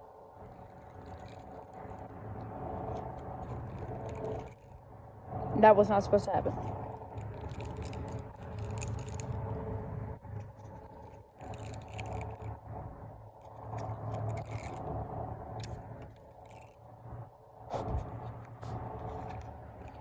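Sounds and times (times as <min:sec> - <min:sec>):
low hum: 0:00.0 - 0:20.0
fishing reel clicks and rattles: 0:03.4 - 0:04.8, 0:06.6 - 0:09.5, 0:10.9 - 0:12.5, 0:13.4 - 0:14.9, 0:15.6 - 0:16.8.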